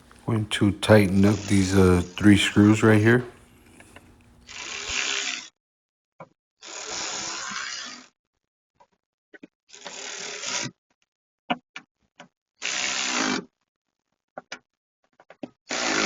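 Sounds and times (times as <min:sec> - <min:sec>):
power driver running: 0:00.0 - 0:04.9.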